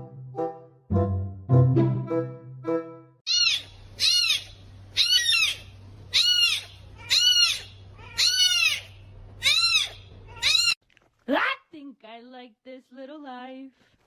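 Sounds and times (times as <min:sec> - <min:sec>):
kitten meowing: 0:03.3 - 0:10.8.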